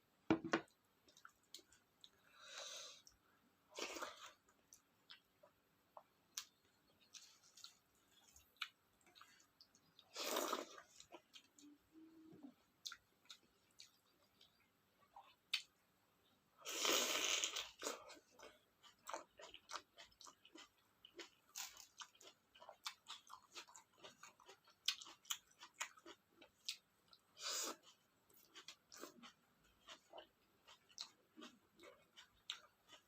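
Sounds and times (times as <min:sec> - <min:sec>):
wet chewing: 0:17.8 - 0:33.0.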